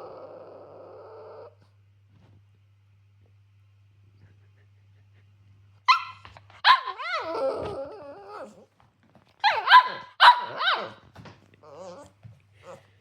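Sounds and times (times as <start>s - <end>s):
dog barking: 5.9s - 7.2s, 9.4s - 11.0s.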